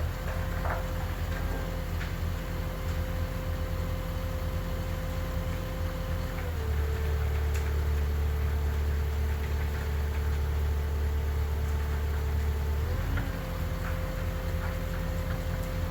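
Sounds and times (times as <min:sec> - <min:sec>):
diesel engine of heavy equipment: 0:00.0 - 0:15.9.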